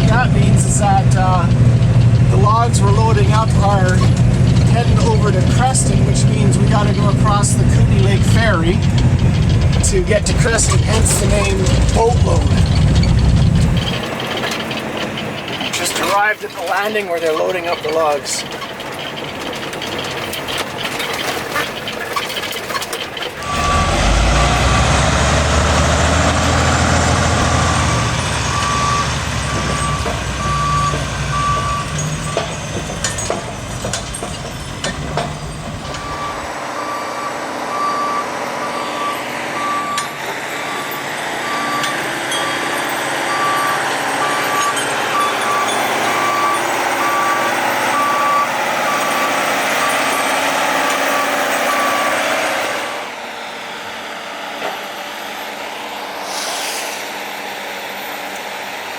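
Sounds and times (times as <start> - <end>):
deep engine running: 0.0 - 15.7, 23.4 - 54.2
back-up alarm beeping: 23.4 - 25.0, 27.4 - 32.8, 34.9 - 50.4.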